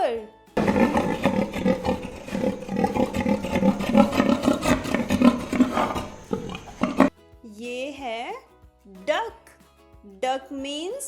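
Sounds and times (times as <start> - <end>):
pig grunting: 0.6 - 7.1.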